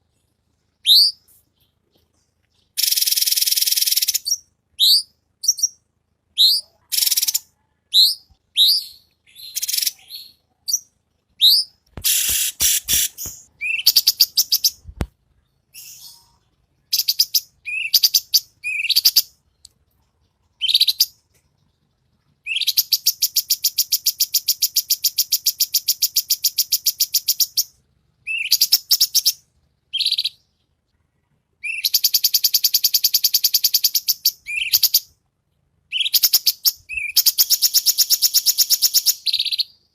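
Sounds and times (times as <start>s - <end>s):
bird whistling and trilling: 0.8s - 1.3s, 2.8s - 5.8s, 6.4s - 14.9s, 15.7s - 16.3s, 16.9s - 19.3s, 22.4s - 30.4s, 31.6s - 35.1s, 35.9s - 39.8s.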